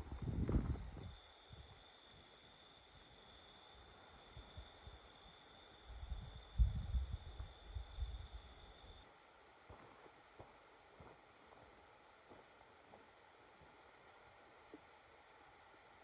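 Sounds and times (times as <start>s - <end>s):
low rumbling thuds: 0.0s - 1.0s
crickets trilling: 0.0s - 16.0s.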